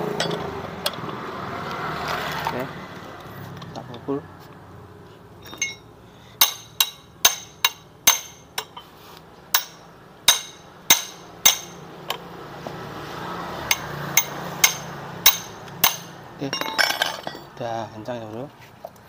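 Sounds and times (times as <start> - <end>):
hammer striking steel tool: 6.4 - 8.8, 9.5 - 11.8, 13.7 - 16.9.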